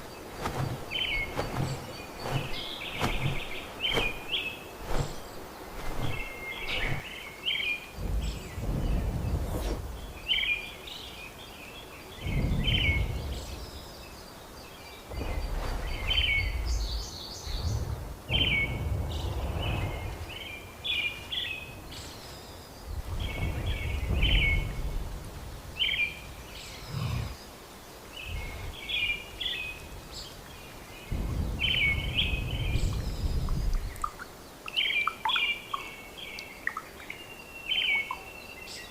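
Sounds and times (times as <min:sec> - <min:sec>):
birds chirping: 0:00.0 - 0:38.9
low rumble: 0:08.0 - 0:10.4, 0:12.2 - 0:14.1, 0:15.1 - 0:21.0.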